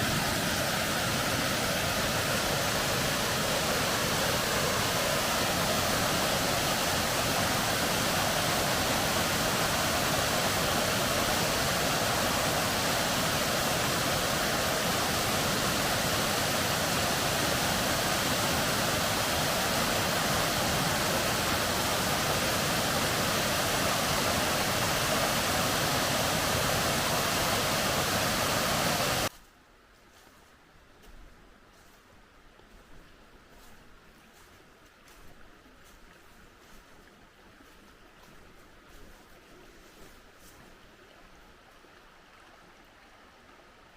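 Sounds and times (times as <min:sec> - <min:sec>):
waterfall roaring: 0:00.0 - 0:29.3.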